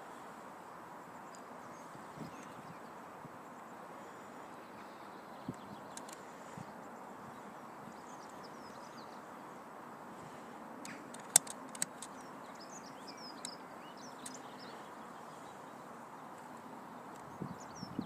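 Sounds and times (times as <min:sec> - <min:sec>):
distant background hum: 0:00.0 - 0:17.9
birds chirping: 0:00.0 - 0:18.0
sharp clicks: 0:05.5 - 0:06.2, 0:10.8 - 0:12.3, 0:13.4 - 0:13.6.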